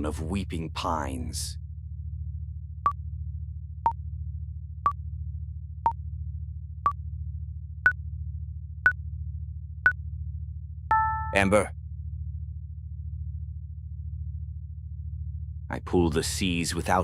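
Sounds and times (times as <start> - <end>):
low synth drone: 0.0 - 17.0
countdown timer beeps: 10.9 - 11.6.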